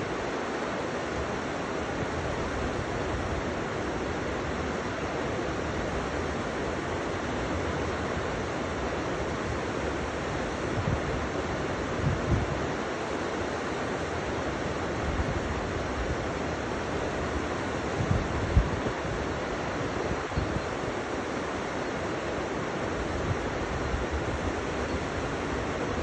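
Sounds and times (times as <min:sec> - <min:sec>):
river water rushing: 0:00.0 - 0:26.0.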